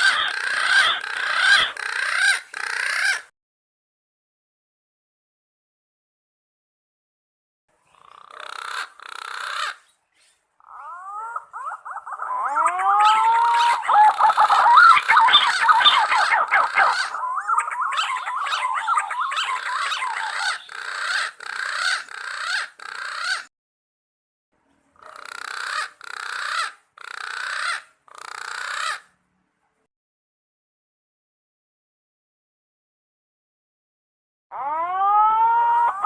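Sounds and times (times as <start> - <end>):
pigeons whistled calls: 10.8 - 21.2.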